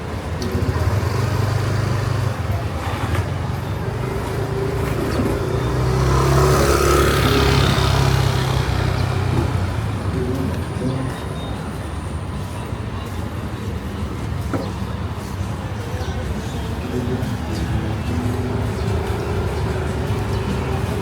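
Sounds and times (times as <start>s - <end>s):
vehicle engine droning: 0.0s - 21.0s
vehicle passing with road noise: 0.0s - 21.0s.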